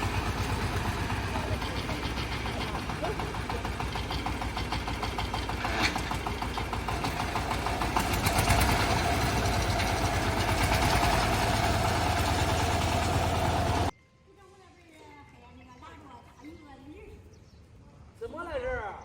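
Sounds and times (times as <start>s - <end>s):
tractor engine clattering: 0.0s - 13.9s.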